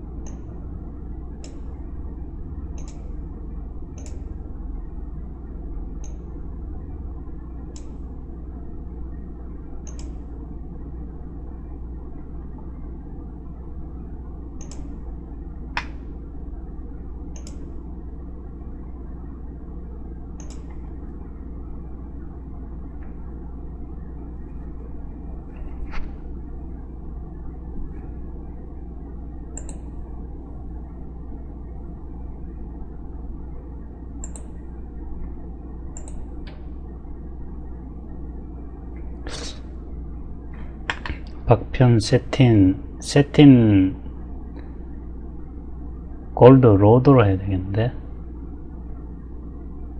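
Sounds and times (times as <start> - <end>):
steady low hum: 0.0 - 49.9
computer mouse clicking: 2.7 - 3.2, 4.0 - 4.3, 7.7 - 8.0, 9.8 - 10.3, 14.6 - 15.0, 17.3 - 17.7, 20.4 - 20.8, 29.5 - 29.9, 34.2 - 34.6, 35.9 - 36.6.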